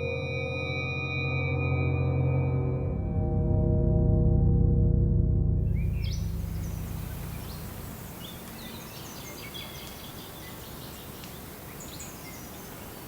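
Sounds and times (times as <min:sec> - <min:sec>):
natural background hiss: 0:05.6 - 0:13.0
small birds chirping: 0:05.6 - 0:13.0.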